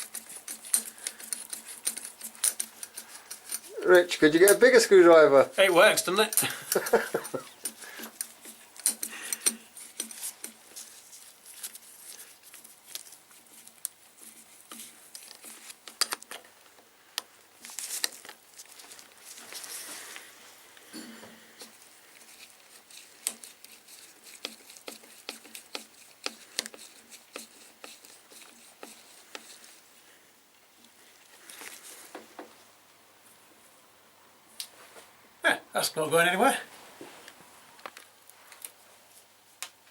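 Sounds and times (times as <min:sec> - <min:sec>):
hand tools clicking on metal parts: 0:00.0 - 0:04.7, 0:06.1 - 0:10.6
screwdriver clicks and taps: 0:15.3 - 0:16.4.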